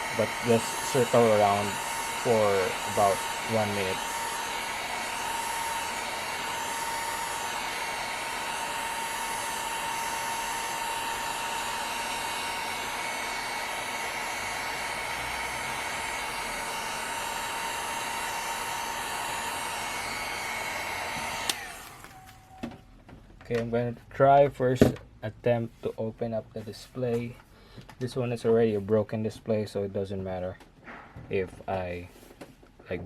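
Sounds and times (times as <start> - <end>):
heat blower rushing air: 0.0 - 22.2.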